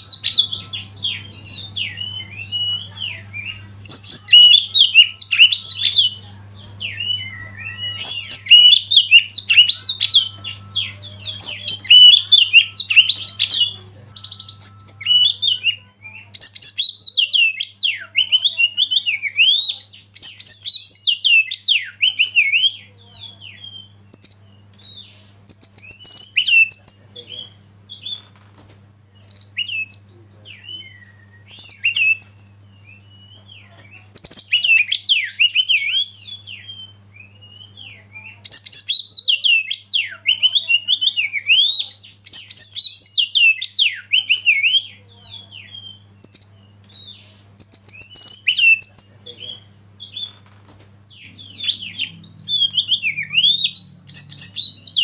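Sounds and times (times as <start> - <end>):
bird singing whistled phrases: 0.0 - 6.2, 6.8 - 27.0, 29.2 - 33.4, 34.2 - 50.4, 51.2 - 55.0
steady low hum: 0.0 - 21.3, 44.8 - 55.0
bird harsh chattering: 0.0 - 28.2, 30.6 - 50.4, 51.1 - 55.0.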